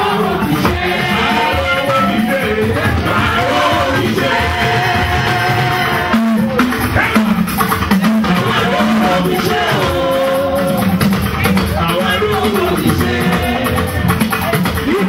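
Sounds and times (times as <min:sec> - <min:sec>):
guitar: 0:00.0 - 0:03.4, 0:04.0 - 0:15.0
drums: 0:00.0 - 0:15.0
person singing: 0:01.2 - 0:03.6.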